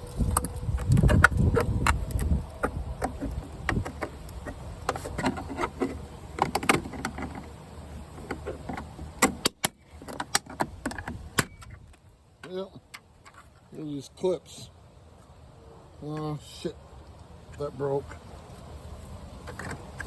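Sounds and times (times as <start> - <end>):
plastic clicking and scraping: 0.0 - 13.6, 19.4 - 20.0
rumbling handling noise: 0.0 - 13.8, 17.2 - 20.0.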